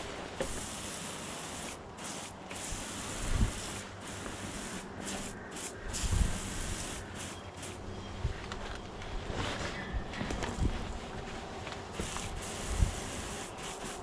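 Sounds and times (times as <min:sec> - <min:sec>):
pressure washer spraying brick: 0:00.0 - 0:07.9, 0:11.9 - 0:14.0.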